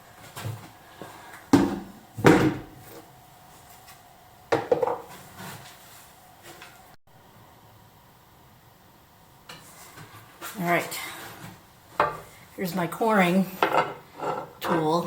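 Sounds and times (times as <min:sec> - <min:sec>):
wooden and metal knocks: 0:01.5 - 0:02.7, 0:04.5 - 0:05.0.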